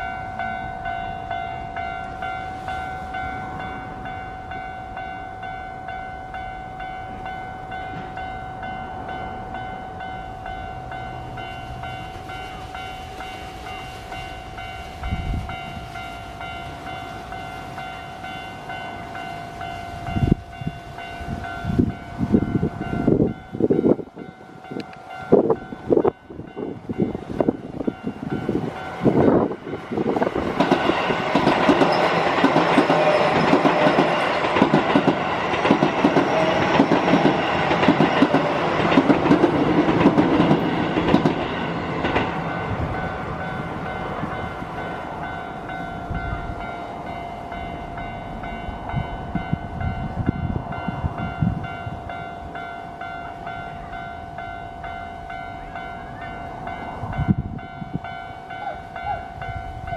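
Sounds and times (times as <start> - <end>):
crossing warning bell ringing: 0.0 - 59.9
train wheels clacking over rails: 26.8 - 45.9.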